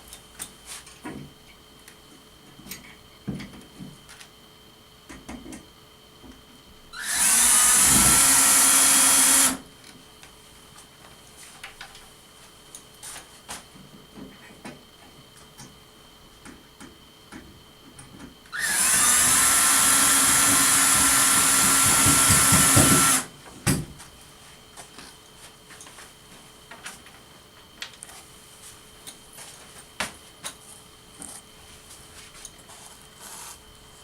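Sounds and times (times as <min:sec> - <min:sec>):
power drill running: 0:07.0 - 0:09.6, 0:18.5 - 0:23.3.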